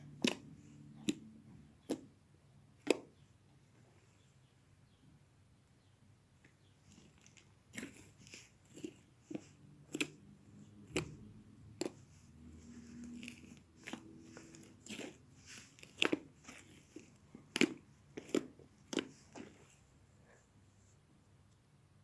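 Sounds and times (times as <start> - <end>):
slime squishing: 0.0 - 3.2, 6.4 - 20.0
slime popping and crackling: 6.9 - 10.2, 10.8 - 12.2, 12.8 - 19.5.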